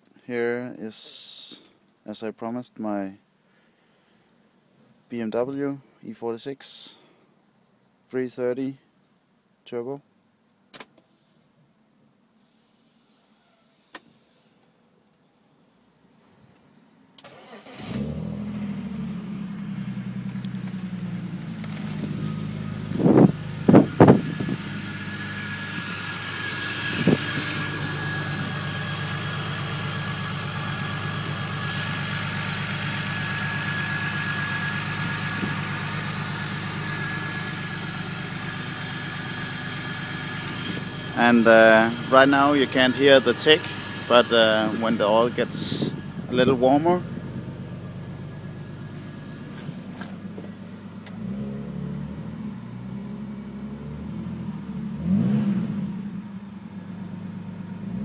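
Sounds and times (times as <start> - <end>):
car engine starting: 17.2 - 58.0
engine idling and revving: 17.3 - 58.0.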